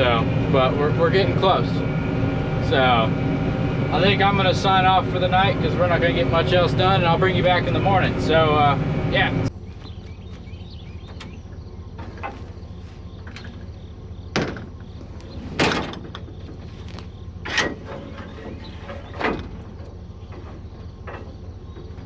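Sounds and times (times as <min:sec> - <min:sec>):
low machine hum: 0:00.0 - 0:22.0
sharp clunks: 0:14.3 - 0:16.7, 0:17.4 - 0:22.0.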